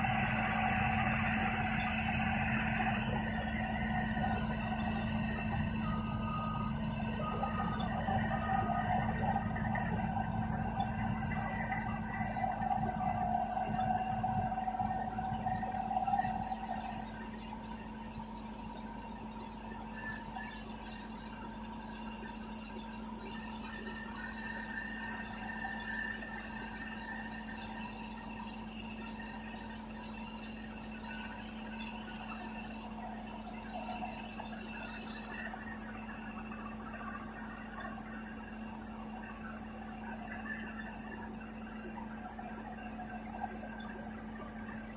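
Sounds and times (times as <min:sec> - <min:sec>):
bulldozer engine hum: 0:00.0 - 0:15.3.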